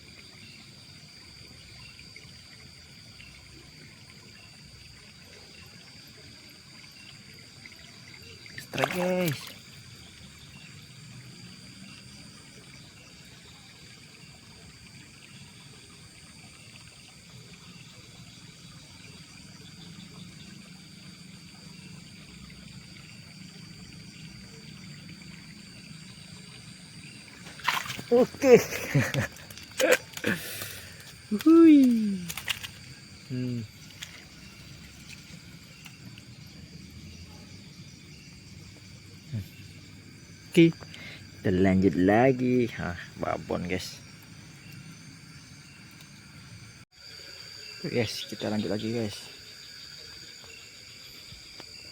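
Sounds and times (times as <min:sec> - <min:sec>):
crickets trilling: 0:00.0 - 0:51.9
night insects droning: 0:00.0 - 0:51.9
trickle of water: 0:00.0 - 0:51.9
faint ticks: 0:45.8 - 0:46.2.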